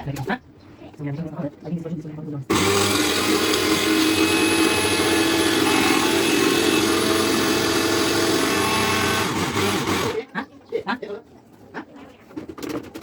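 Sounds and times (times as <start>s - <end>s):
mixer grinder motor grinding: 2.5s - 10.2s.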